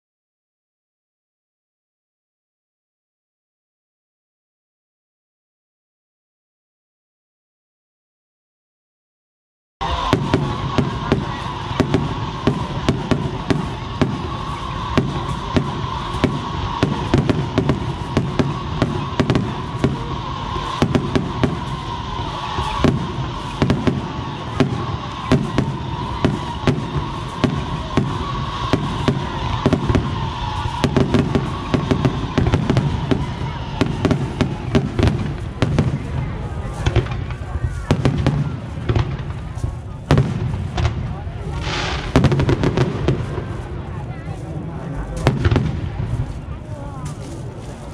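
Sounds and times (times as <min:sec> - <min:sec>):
fireworks bangs and crackles: 0:09.8 - 0:47.9.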